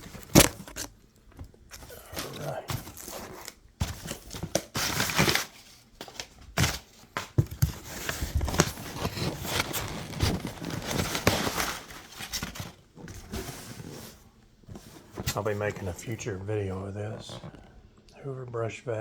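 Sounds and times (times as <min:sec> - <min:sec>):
packaging crinkling and tearing: 0:00.0 - 0:13.9.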